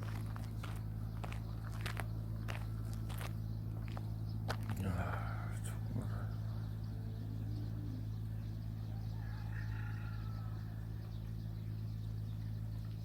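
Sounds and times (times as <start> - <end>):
low machine hum: 0.0 - 13.0.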